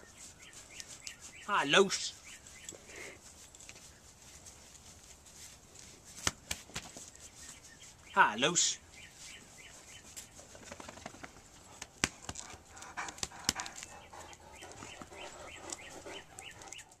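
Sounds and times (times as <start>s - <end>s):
bird chirping: 0.0s - 4.2s, 7.0s - 11.2s, 13.3s - 17.0s
dog moving and rustling: 2.2s - 8.0s.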